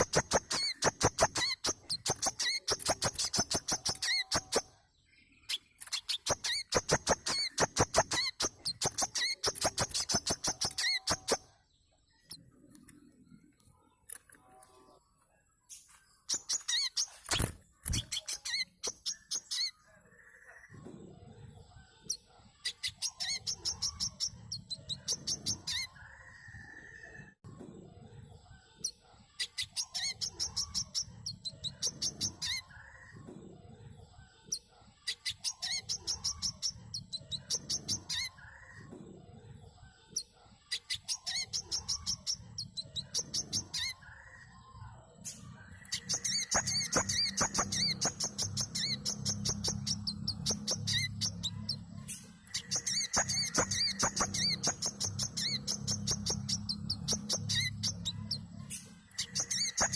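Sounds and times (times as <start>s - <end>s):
bird chirping high trills: 45.8s - 59.9s.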